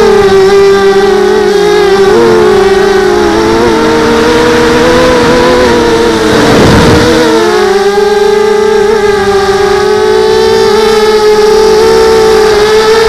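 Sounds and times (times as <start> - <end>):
quadcopter motors whining: 0.0 - 13.0
rushing noise: 4.4 - 7.5.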